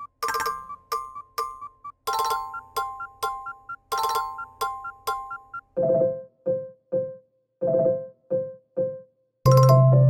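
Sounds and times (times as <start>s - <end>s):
electronic chime ringtone: 0.0s - 6.2s, 9.5s - 10.0s.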